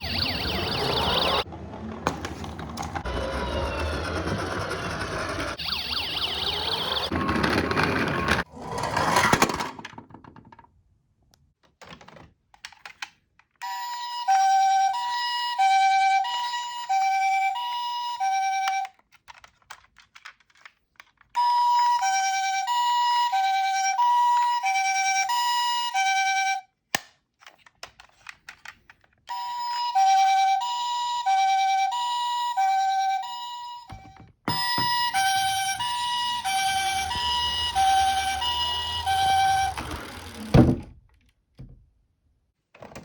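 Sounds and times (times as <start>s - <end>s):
ambulance hi-lo siren: 0.0s - 8.4s, 13.9s - 18.9s, 21.4s - 26.6s, 29.3s - 40.5s.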